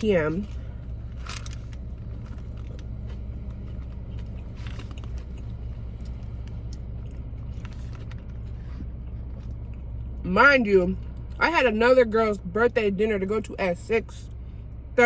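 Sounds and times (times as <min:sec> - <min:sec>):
steady low hum: 0:00.0 - 0:15.0
person chewing food: 0:00.5 - 0:10.2.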